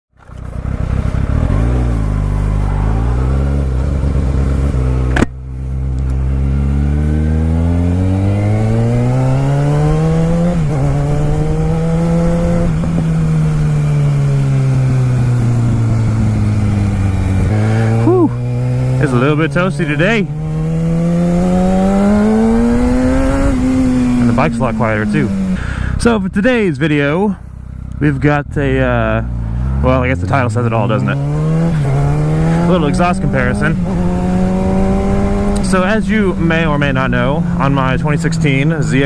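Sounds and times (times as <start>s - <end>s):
motorcycle engine revving: 0.2s - 26.1s, 27.4s - 39.0s
sharp click: 5.1s - 6.2s.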